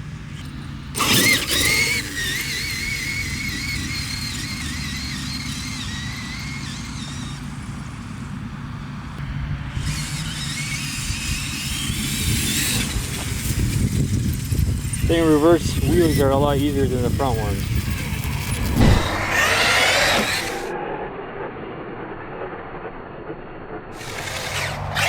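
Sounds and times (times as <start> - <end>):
electric motor whining: 0.3 - 20.8, 24.0 - 25.0
loud sudden clatter: 18.4 - 20.7.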